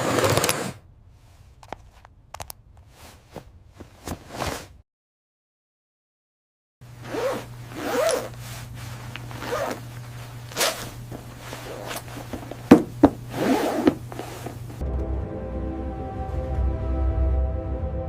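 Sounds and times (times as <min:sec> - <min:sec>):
zipper zipping: 0:00.0 - 0:00.8, 0:06.9 - 0:14.8.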